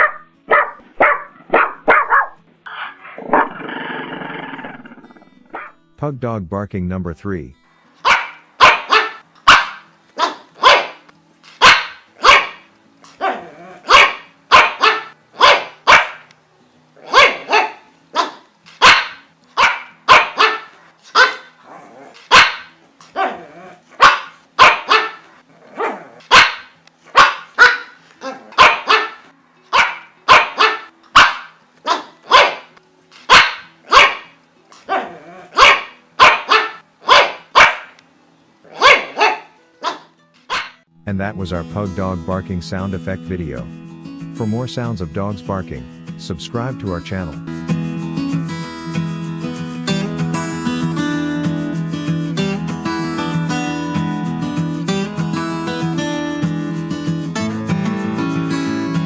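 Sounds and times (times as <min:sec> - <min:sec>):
dog barking: 0:00.0 - 0:03.5, 0:05.5 - 0:05.7, 0:08.0 - 0:16.3, 0:17.0 - 0:21.6, 0:22.3 - 0:25.2, 0:25.8 - 0:32.7, 0:33.3 - 0:34.3, 0:34.9 - 0:38.0, 0:38.7 - 0:40.8.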